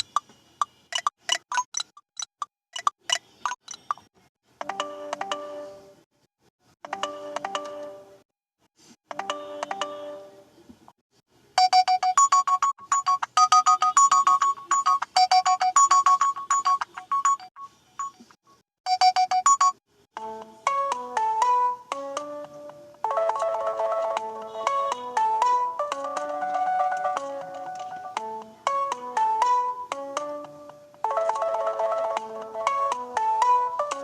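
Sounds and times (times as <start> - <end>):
quick repeated beeping: 11.6 - 18.3.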